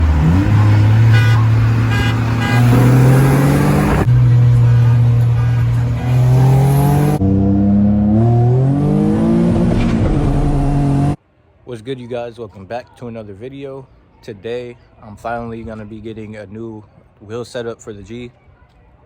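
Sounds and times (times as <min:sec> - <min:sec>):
car engine accelerating hard: 0:00.0 - 0:11.2.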